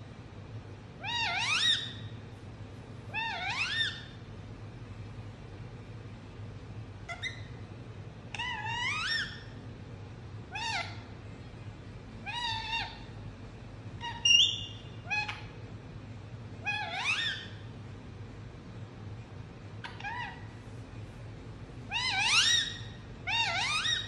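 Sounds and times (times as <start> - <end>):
parakeet calling: 1.0 - 2.1, 3.1 - 4.2, 7.1 - 7.6, 8.3 - 9.6, 10.5 - 11.1, 12.2 - 13.2, 14.0 - 15.6, 16.6 - 17.6, 19.8 - 20.5, 21.9 - 24.0.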